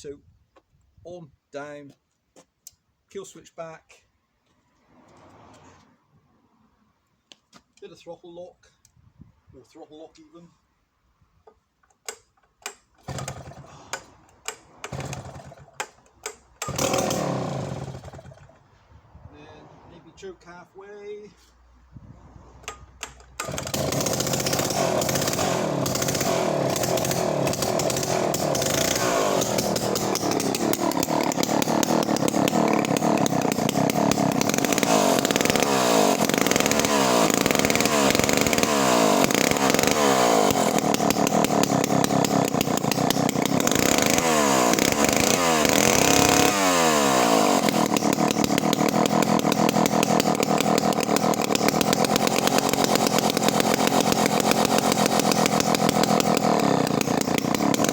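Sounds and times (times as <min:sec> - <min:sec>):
chainsaw engine revving: 0:13.0 - 0:18.6, 0:22.7 - 0:57.9.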